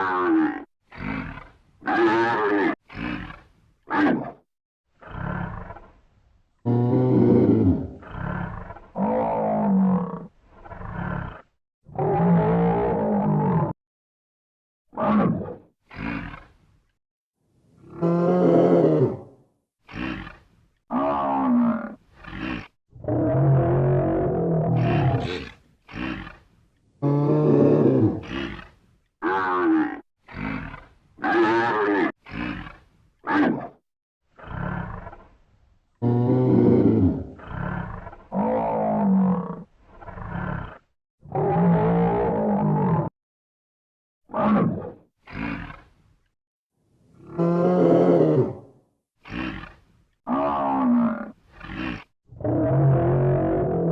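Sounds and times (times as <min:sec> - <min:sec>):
buffalo bellowing and grunting: 0:00.0 - 0:04.4, 0:19.9 - 0:33.8.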